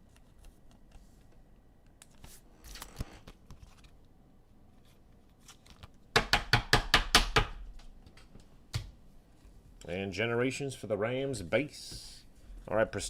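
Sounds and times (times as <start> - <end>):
cards rustling: 0.0 - 4.0, 4.8 - 6.0.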